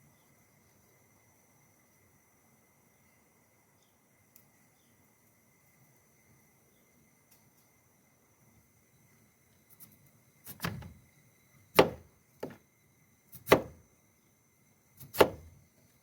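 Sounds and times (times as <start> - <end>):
knife chopping on cutting board: 10.6 - 10.9, 11.8 - 12.6, 13.4 - 13.8, 15.0 - 15.5.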